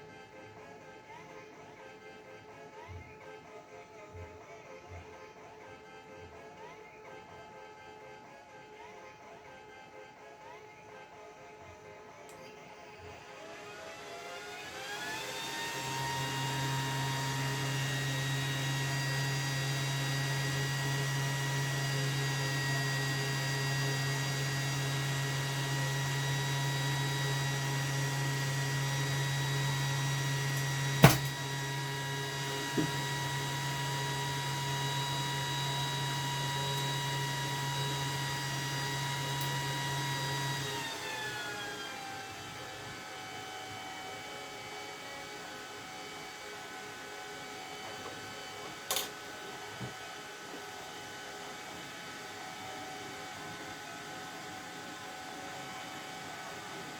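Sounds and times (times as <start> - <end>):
electric motor whining and humming: 13.2 - 56.9.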